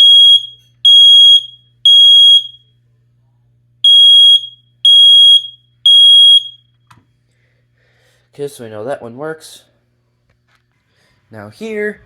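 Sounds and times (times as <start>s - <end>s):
smoke alarm beeps: 0.0s - 2.8s, 3.8s - 6.9s.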